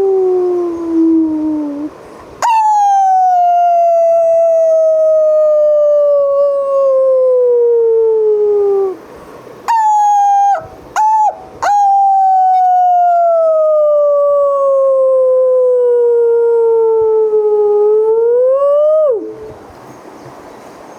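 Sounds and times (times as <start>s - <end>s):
dog howling: 2.4s - 9.0s, 9.7s - 16.9s.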